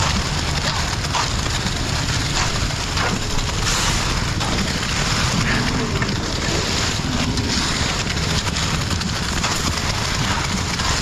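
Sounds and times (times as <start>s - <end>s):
concrete mixer truck running: 0.0s - 11.0s.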